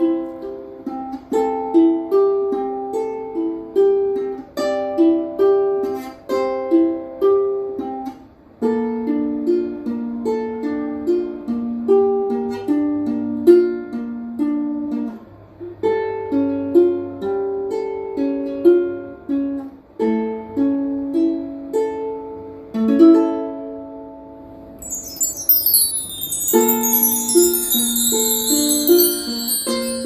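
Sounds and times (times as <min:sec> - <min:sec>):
ukulele melody: 0:00.0 - 0:08.1, 0:15.8 - 0:23.7, 0:26.5 - 0:30.0
bright chime shimmer: 0:24.8 - 0:30.0.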